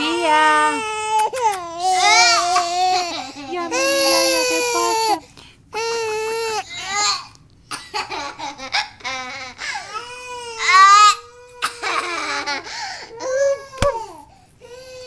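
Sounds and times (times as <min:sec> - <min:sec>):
baby laughing and babbling: 0:00.8 - 0:05.2.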